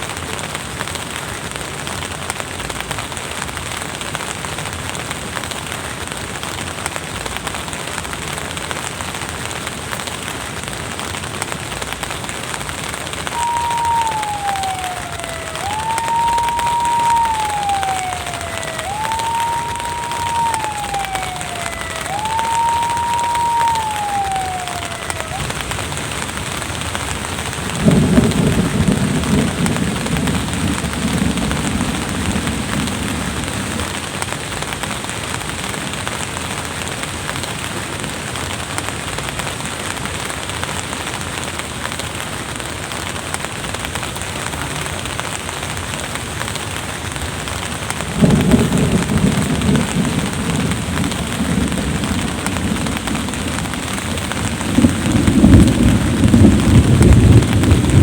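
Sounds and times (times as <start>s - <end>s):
drizzling rain: 0.0s - 58.0s
thunder rumbling: 13.2s - 26.2s, 27.3s - 34.8s, 48.0s - 58.0s.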